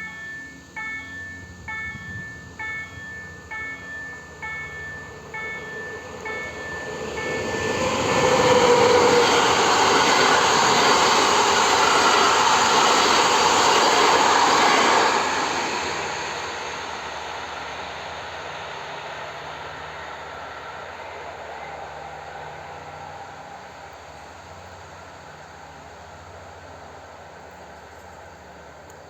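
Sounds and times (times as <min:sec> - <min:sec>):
crossing warning bell: 0:00.0 - 0:17.2
train passing rushing noise: 0:02.2 - 0:27.8.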